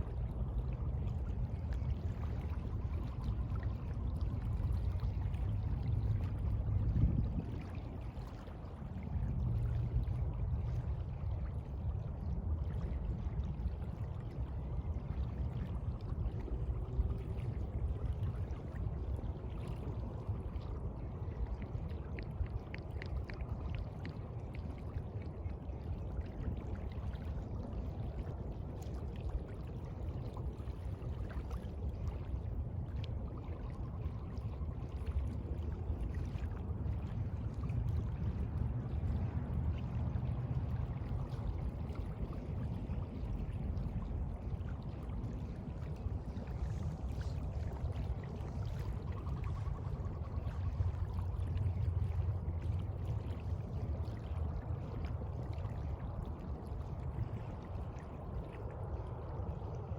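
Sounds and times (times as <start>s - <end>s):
sea water lapping: 0.0s - 59.9s
small splashes and drips: 0.0s - 59.9s.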